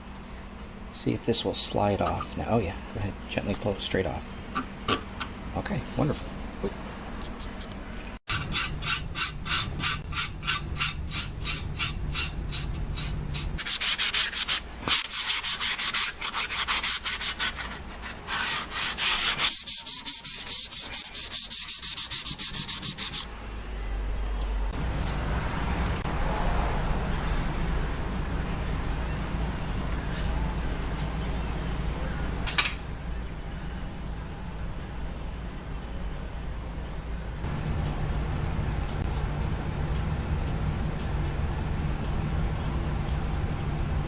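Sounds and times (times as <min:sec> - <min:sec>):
steady low hum: 0:00.0 - 0:15.0, 0:21.9 - 0:44.0
scrubbing metal with abrasive: 0:08.3 - 0:23.3.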